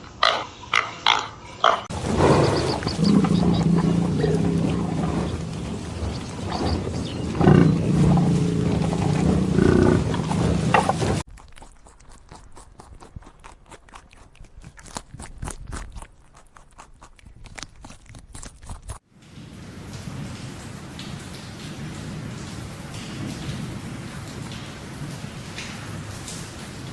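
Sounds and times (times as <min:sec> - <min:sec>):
large animal roaring: 0:01.1 - 0:11.2
steady hiss: 0:19.2 - 0:26.9.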